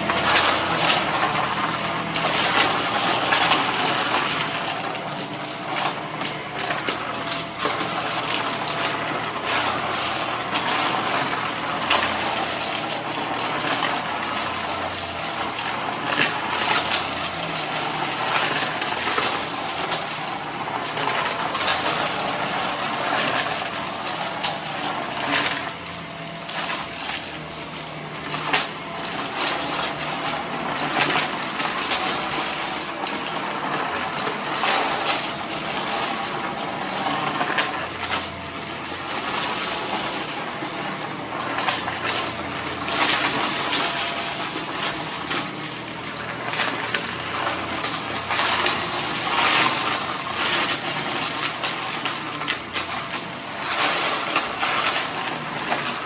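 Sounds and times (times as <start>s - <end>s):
debris clattering in vacuum: 0.0s - 56.0s
vacuum cleaner running: 0.0s - 56.0s.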